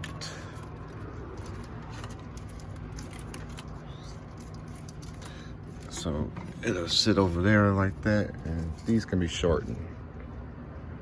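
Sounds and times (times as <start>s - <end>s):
wires rustling: 0.0s - 9.9s
low background hum: 0.0s - 11.0s.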